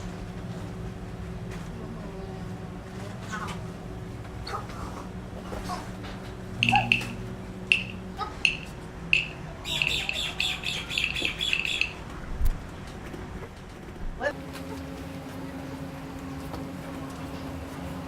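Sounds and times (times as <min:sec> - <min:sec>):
steady low hum: 0:00.0 - 0:18.0
bird chirping: 0:06.6 - 0:12.0.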